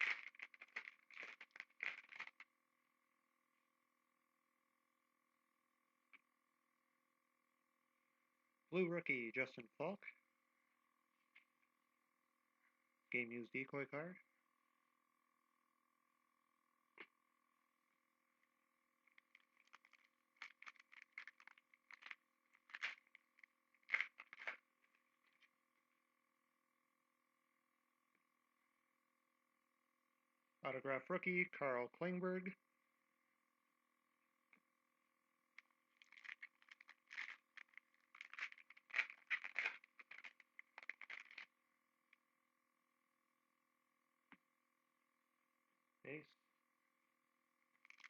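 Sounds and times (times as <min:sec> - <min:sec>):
cards and wrapping rustling: 0:00.0 - 0:02.5, 0:19.1 - 0:24.6, 0:35.6 - 0:41.5, 0:47.8 - 0:48.0
faint high hum: 0:00.0 - 0:48.0.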